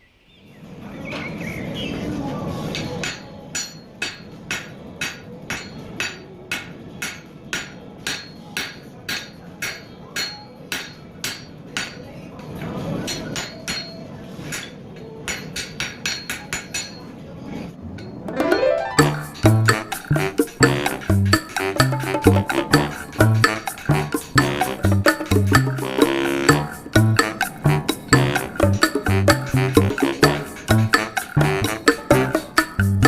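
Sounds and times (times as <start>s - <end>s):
hammer striking steel on anvil: 3.0s - 12.0s, 15.3s - 17.0s
music: 18.3s - 33.0s.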